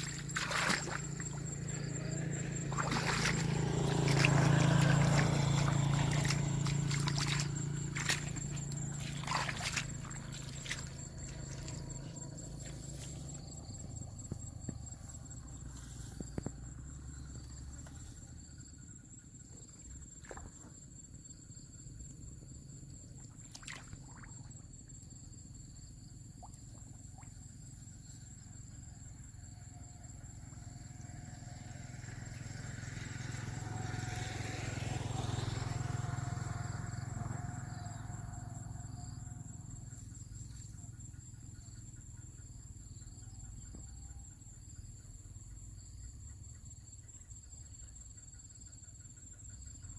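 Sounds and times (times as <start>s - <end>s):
motor vehicle passing: 0.0s - 18.9s, 30.4s - 39.7s
insects trilling: 0.0s - 49.9s.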